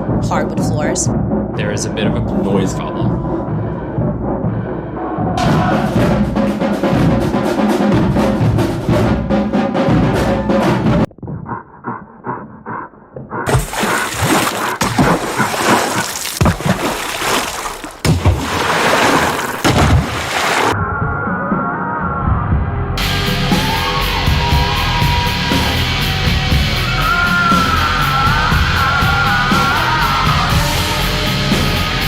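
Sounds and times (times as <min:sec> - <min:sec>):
drumline bass drums: 0:03.5 - 0:11.5, 0:23.0 - 0:32.0
thuds: 0:13.5 - 0:20.8
water splashing and sloshing: 0:13.5 - 0:20.8.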